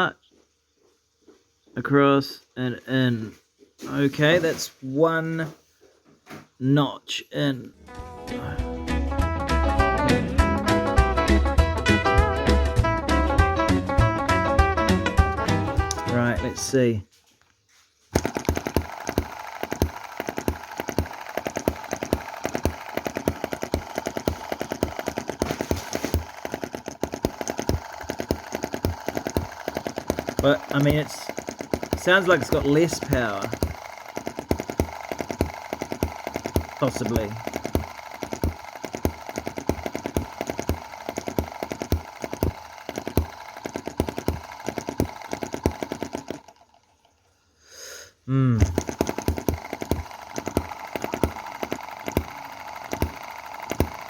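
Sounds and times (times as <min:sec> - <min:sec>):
small engine firing knocks: 0:18.1 - 0:46.7, 0:48.6 - 0:54.0
mechanical clatter: 0:18.1 - 0:47.3, 0:48.6 - 0:54.0.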